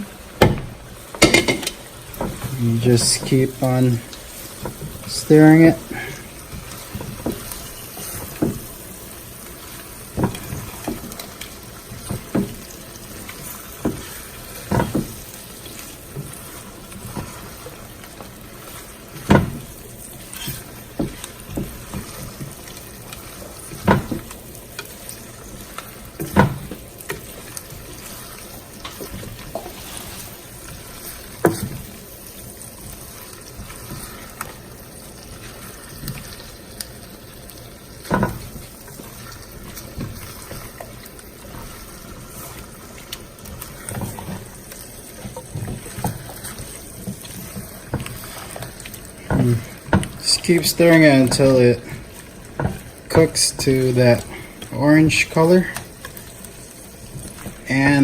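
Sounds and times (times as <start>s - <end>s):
shrimp sizzling in butter: 0.0s - 58.0s
utensil knocking against pan: 0.4s - 1.8s.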